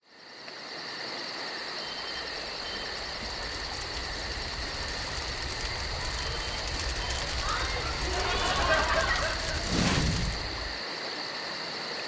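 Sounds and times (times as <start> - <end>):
insects chirping: 0.1 - 12.0
low rumble: 2.0 - 10.8.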